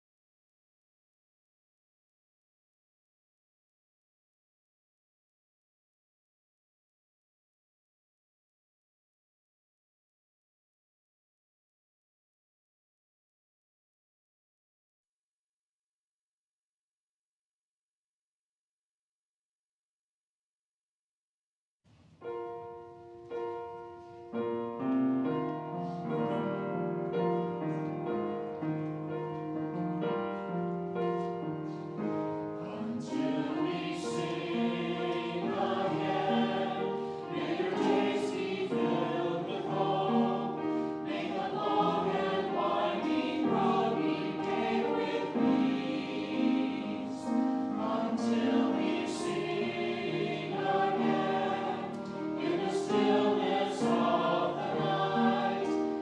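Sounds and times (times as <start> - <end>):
choir singing sacred music: 31.7 - 56.0.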